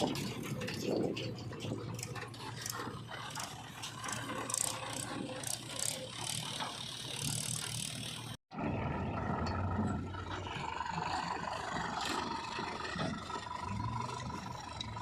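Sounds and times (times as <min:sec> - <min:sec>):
metallic clanks and rattles: 0:00.0 - 0:08.4
diesel engine running: 0:00.0 - 0:15.0.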